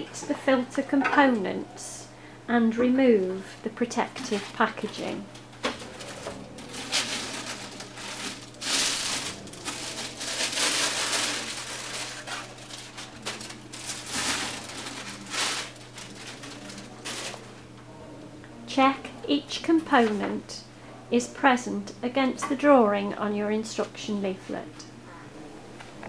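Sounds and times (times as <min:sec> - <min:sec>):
packaging crinkling and rustling: 0:04.2 - 0:17.5.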